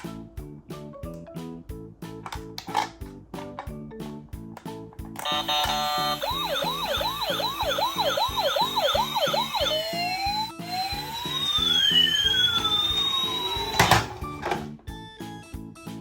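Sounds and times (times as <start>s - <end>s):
background music with steady beat: 0.0s - 16.0s
toy ambulance siren: 5.2s - 14.6s.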